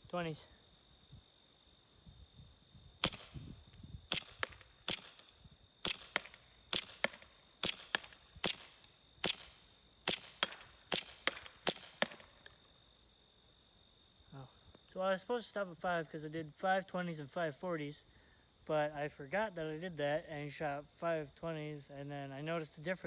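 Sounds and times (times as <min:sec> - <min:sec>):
crickets chirping: 0:00.0 - 0:23.0
airsoft pistol shots: 0:03.0 - 0:03.5, 0:04.1 - 0:12.5.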